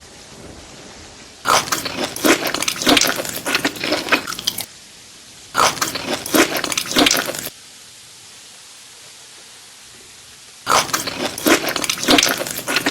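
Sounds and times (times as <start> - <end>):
crunchy food chewing: 1.5 - 4.7, 5.6 - 7.5, 10.7 - 12.9.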